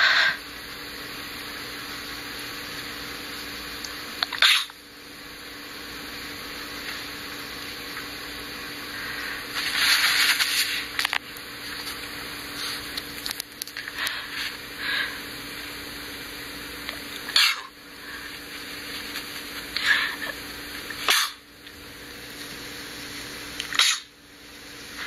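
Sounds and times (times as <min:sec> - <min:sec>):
faint hum: 0:00.0 - 0:25.0
steady hiss: 0:00.0 - 0:25.0
person sneezing: 0:21.0 - 0:21.4, 0:23.8 - 0:24.1.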